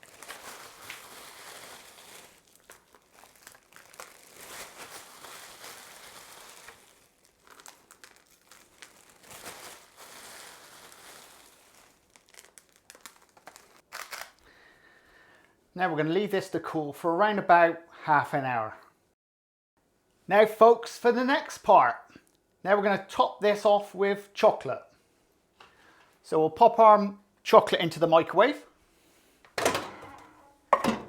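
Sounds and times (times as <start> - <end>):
bag crinkling and rustling: 0.0 - 14.4.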